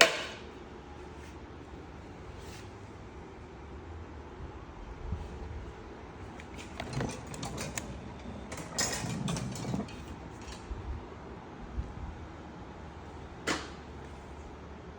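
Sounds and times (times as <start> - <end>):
tools clattering: 6.5 - 10.7.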